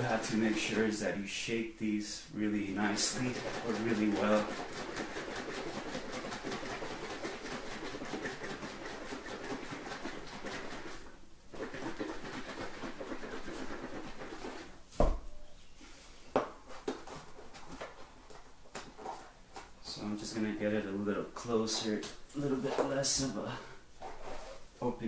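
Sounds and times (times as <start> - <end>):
liquid sloshing in shaken bottle: 2.8 - 14.8.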